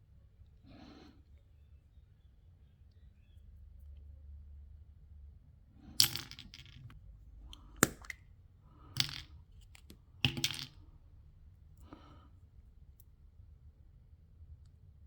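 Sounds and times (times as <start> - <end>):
plastic capsules clicking and clattering: 6.0 - 8.2, 9.0 - 10.8.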